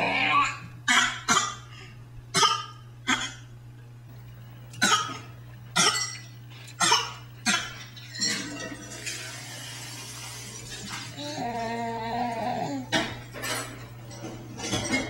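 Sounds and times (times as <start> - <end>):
baby fake coughing: 0.4 - 1.7, 2.3 - 3.5, 4.8 - 6.1, 6.8 - 7.8, 12.5 - 13.2.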